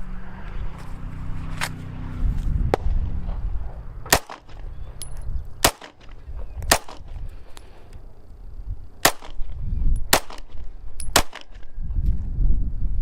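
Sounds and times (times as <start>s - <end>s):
pistol shots: 4.1s - 4.9s, 5.6s - 7.2s, 9.0s - 11.7s.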